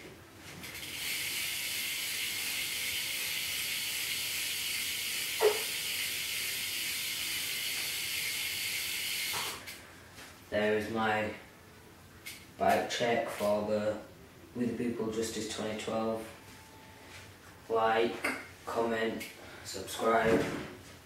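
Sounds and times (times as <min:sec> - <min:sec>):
bike hub freewheeling buzz: 0:00.6 - 0:09.8.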